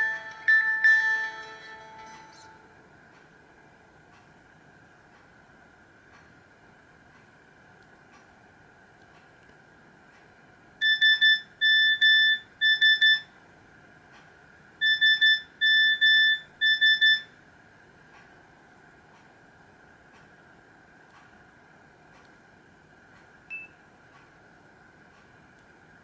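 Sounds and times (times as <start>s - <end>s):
electronic ringtone beeps: 14.8s - 17.3s.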